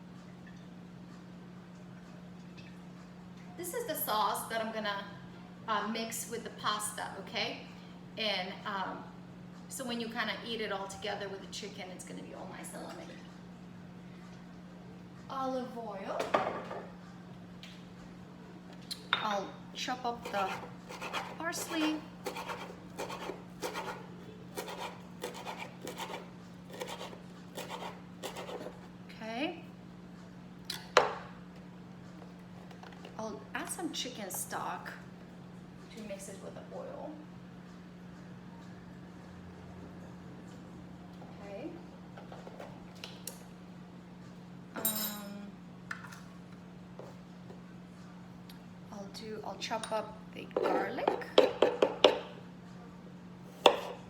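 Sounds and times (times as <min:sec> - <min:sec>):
steady low hum: 0:16.8 - 0:54.0
knife chopping on cutting board: 0:20.2 - 0:24.0, 0:24.6 - 0:28.8, 0:50.6 - 0:52.3, 0:53.6 - 0:54.0
ringing metal clang: 0:44.8 - 0:45.3.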